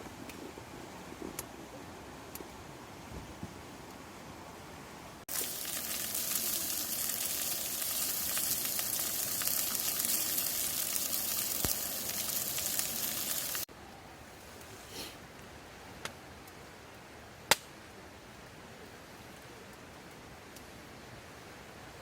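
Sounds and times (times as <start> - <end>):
food sizzling in a hot pan: 5.3 - 13.7.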